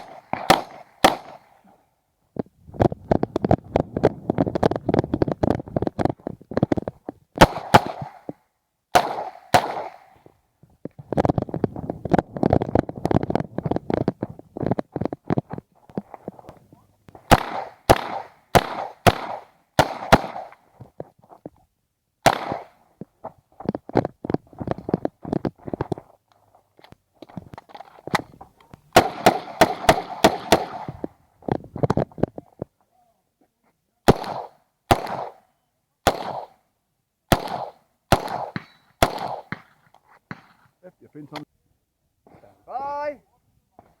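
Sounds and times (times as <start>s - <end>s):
pistol shots: 0.0s - 1.6s, 7.4s - 10.2s, 17.3s - 20.6s, 22.2s - 22.8s, 28.9s - 31.1s, 34.1s - 36.6s, 37.3s - 40.6s
faint distant shots and knocks: 37.3s - 40.7s.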